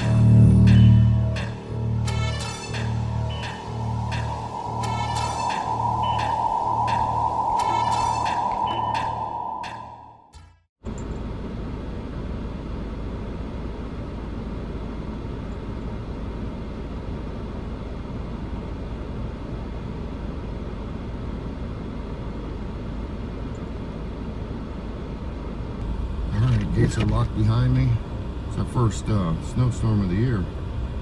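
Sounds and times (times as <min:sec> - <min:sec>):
vehicle engine rumble: 0:00.0 - 0:10.0, 0:24.3 - 0:31.0.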